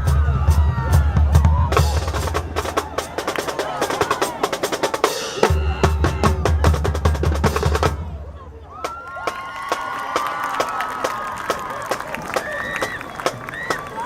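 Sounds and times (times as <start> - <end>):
snare drum rolls: 0.0 - 8.1
pounding bass drums: 0.0 - 8.4.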